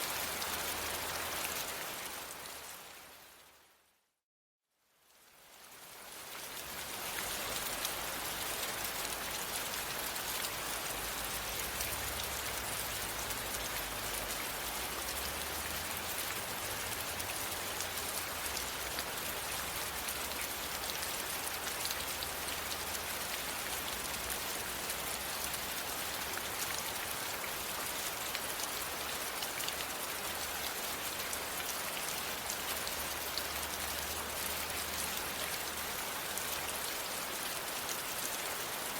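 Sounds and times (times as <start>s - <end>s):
steady rain falling: 0.0s - 3.8s, 4.9s - 38.9s.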